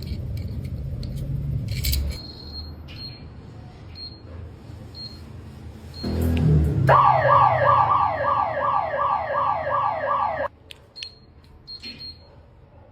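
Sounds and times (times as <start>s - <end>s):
electronic alarm siren sweeping: 6.9s - 10.5s.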